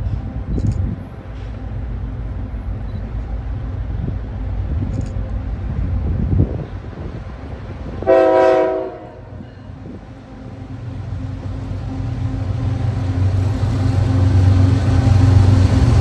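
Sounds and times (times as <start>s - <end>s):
locomotive engine rumble: 0.0s - 16.0s
locomotive horn blast: 8.0s - 9.4s.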